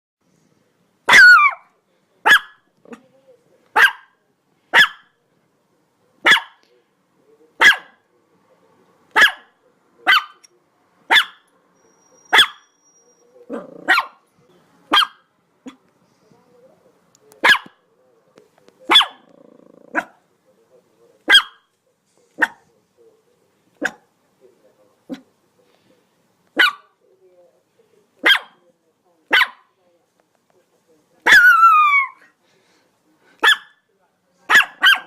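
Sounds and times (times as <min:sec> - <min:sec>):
dog barking: 0:01.1 - 0:02.7, 0:03.8 - 0:05.2, 0:06.2 - 0:06.6, 0:07.6 - 0:08.0, 0:09.1 - 0:10.5, 0:11.1 - 0:11.5, 0:12.3 - 0:12.7, 0:13.5 - 0:14.2, 0:14.9 - 0:15.8, 0:17.4 - 0:17.8, 0:18.9 - 0:19.3, 0:19.9 - 0:20.2, 0:21.3 - 0:21.7, 0:22.4 - 0:22.7, 0:23.8 - 0:24.1, 0:26.6 - 0:27.0, 0:28.2 - 0:28.6, 0:29.3 - 0:29.7, 0:31.2 - 0:32.2, 0:33.4 - 0:33.8, 0:34.5 - 0:35.0
dog growling low: 0:13.5 - 0:13.9, 0:19.2 - 0:20.1.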